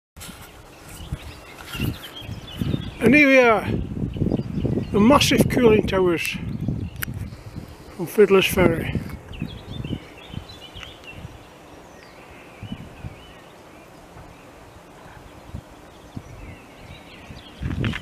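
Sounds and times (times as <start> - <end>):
outdoor background noise: 0.2 - 18.0
small birds chirping: 0.2 - 18.0.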